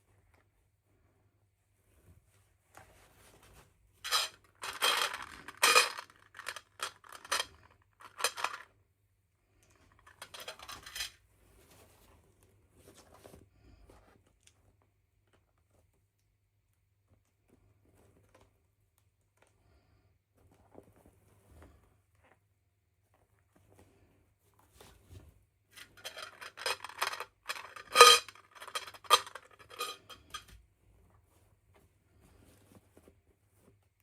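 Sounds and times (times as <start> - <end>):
plastic toy pieces rattling: 4.1 - 8.7, 10.0 - 11.2, 25.8 - 30.4.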